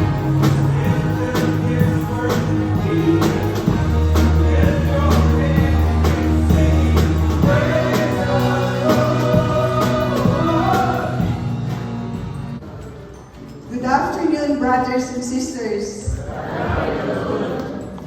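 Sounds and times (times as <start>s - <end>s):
song with drums and singing: 0.0s - 12.1s.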